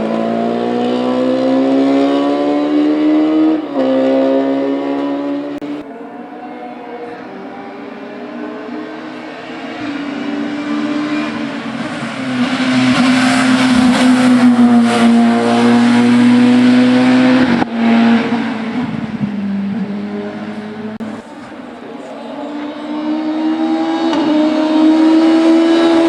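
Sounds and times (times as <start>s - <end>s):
race car engine passing: 0.0s - 26.0s.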